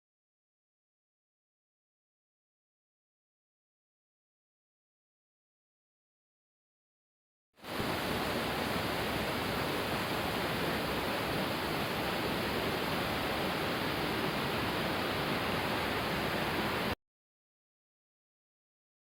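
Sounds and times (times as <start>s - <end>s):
small waterfall rushing: 7.6s - 17.0s.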